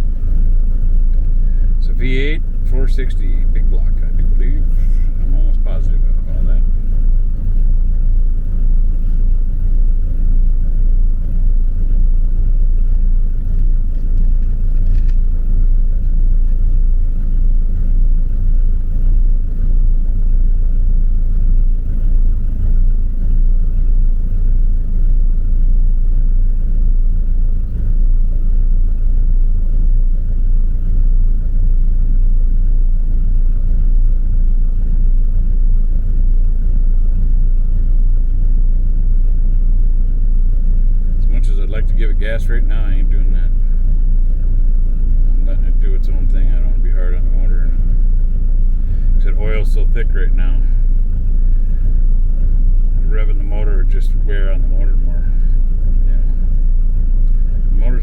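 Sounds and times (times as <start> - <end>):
engine idling rough: 0.0 - 58.0.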